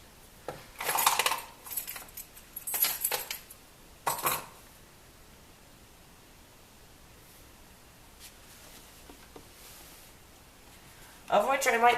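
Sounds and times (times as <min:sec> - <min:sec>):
metal screws clinking: 0:00.8 - 0:04.6.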